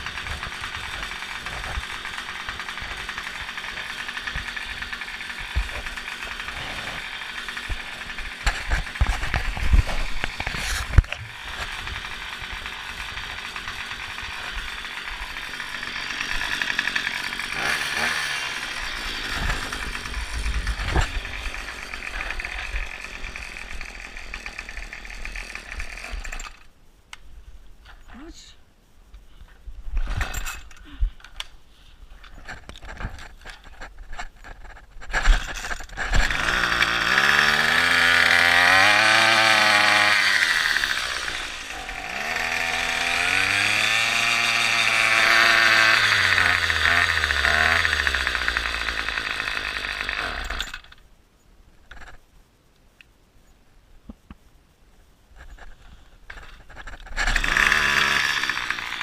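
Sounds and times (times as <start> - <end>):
engine knocking: 0.0 - 9.5
small petrol engine running: 0.0 - 26.7, 34.6 - 51.0, 56.3 - 59.0.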